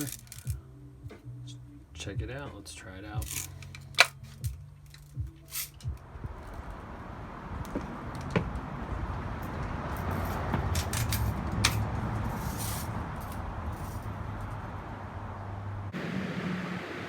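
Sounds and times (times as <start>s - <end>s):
steady rushing noise: 5.2s - 17.0s.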